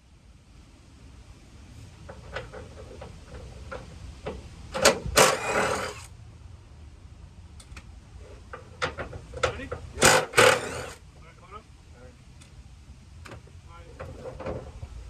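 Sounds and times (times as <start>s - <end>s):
parts clattering and scraping: 4.8s - 6.1s, 10.0s - 11.0s.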